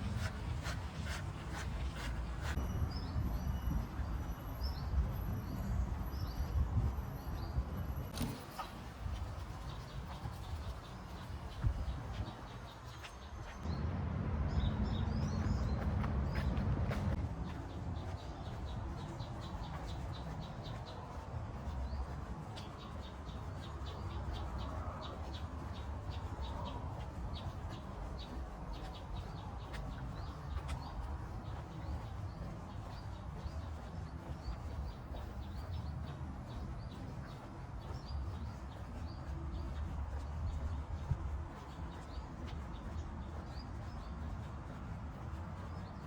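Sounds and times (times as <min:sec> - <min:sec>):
steady low rumble: 0:13.4 - 0:46.0
birds chirping: 0:14.5 - 0:46.0.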